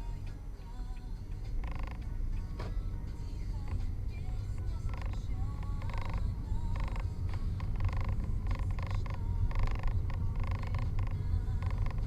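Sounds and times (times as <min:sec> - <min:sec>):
road and engine rumble: 0:00.0 - 0:12.0
high-pitched creaks: 0:01.6 - 0:02.1, 0:04.7 - 0:12.0.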